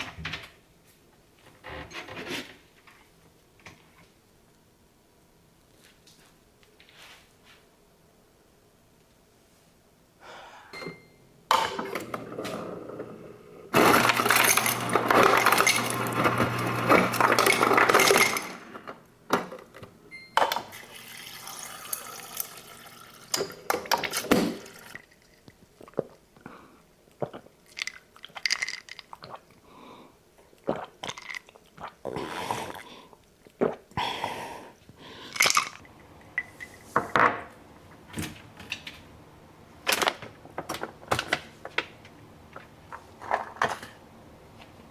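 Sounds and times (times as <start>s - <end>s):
water running: 20.7s - 25.0s
glassware clinking: 35.6s - 37.2s.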